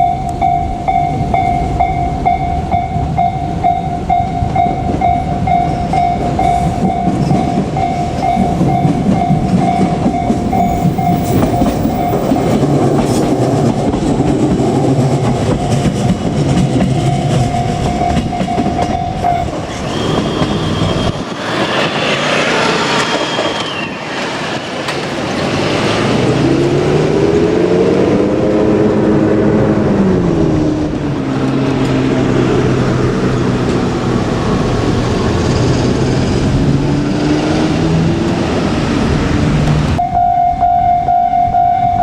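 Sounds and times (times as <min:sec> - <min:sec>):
train wheels clattering over rails: 0:04.4 - 0:27.0.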